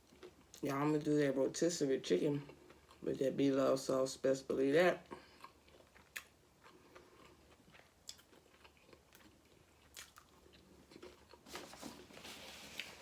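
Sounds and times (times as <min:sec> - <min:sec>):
chewing food: 0:00.0 - 0:00.6, 0:02.4 - 0:03.1, 0:05.1 - 0:11.5.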